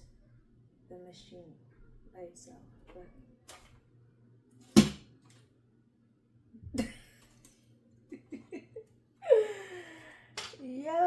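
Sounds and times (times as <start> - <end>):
knocks on sewing machine parts: 4.8 - 5.0.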